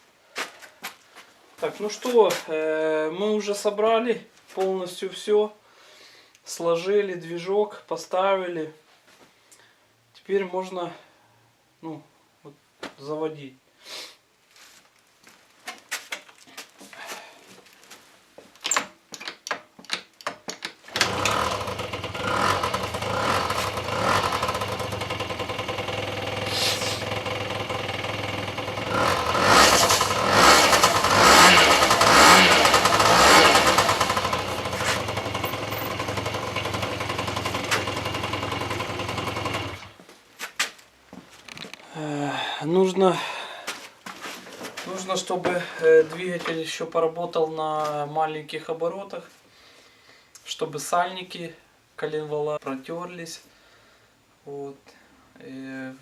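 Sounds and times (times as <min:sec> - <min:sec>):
scooter engine revving: 0:20.9 - 0:39.9.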